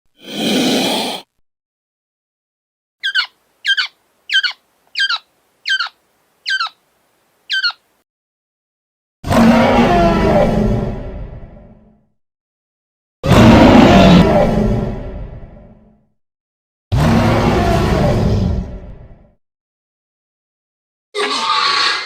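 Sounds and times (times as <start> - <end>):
bird-like creature calls: 0.2 - 1.2, 3.0 - 6.8, 7.5 - 7.8, 21.2 - 22.0
creature roar: 0.2 - 1.3, 9.2 - 11.0, 13.2 - 14.9, 16.9 - 18.8, 21.2 - 22.0.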